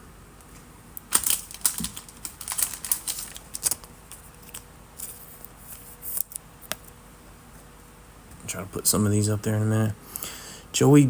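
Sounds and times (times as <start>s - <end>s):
trading cards clicking and rustling: 0.5s - 6.9s.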